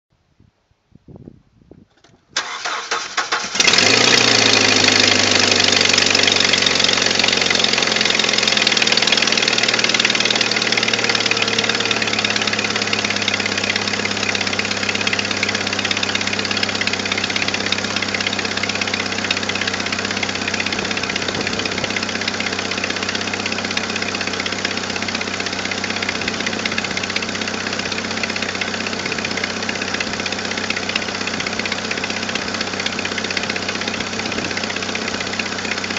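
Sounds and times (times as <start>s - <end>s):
car engine cranking and starting: 2.0s - 35.9s
engine revving then idling: 2.4s - 35.9s.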